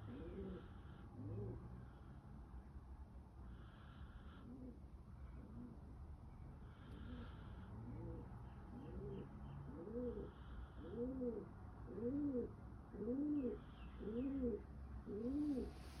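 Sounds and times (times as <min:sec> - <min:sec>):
bird cooing: 0:00.0 - 0:01.6, 0:07.9 - 0:16.0.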